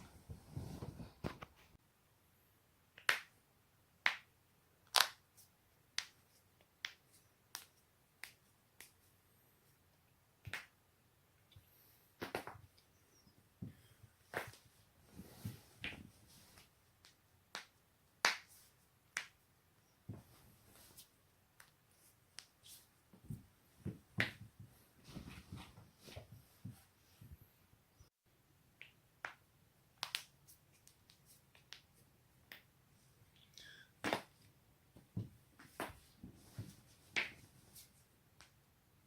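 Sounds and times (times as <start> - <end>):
soft rustling: 0.0 - 1.8, 11.6 - 16.9, 19.8 - 27.7, 34.9 - 38.2.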